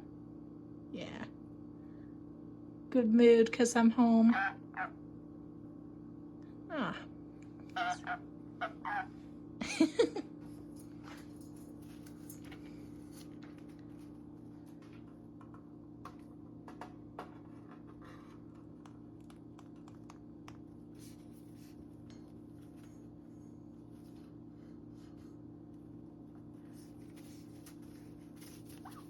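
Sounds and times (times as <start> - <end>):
steady low hum: 0.0 - 29.0
parrot call: 4.3 - 5.0, 7.7 - 9.2
parrot beak clicks and scratches: 18.5 - 21.6.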